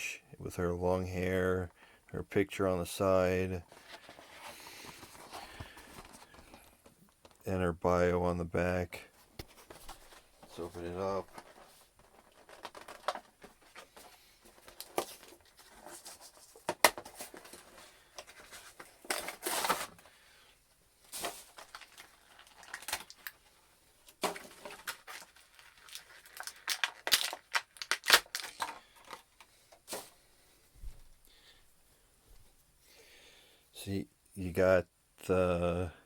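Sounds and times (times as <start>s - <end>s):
plastic packaging crinkling: 9.7s - 20.2s, 21.0s - 30.1s
box packaging tearing: 14.7s - 20.0s, 21.1s - 23.4s, 24.2s - 29.2s
packaging clicks: 24.2s - 29.2s.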